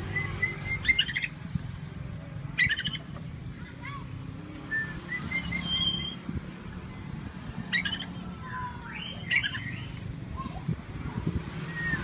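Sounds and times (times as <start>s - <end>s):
bird singing whistles: 0.0s - 1.3s, 4.7s - 6.2s, 8.9s - 10.0s, 11.7s - 12.0s
bird harsh chattering: 0.2s - 1.4s, 2.6s - 3.2s, 7.6s - 8.2s, 8.9s - 10.0s.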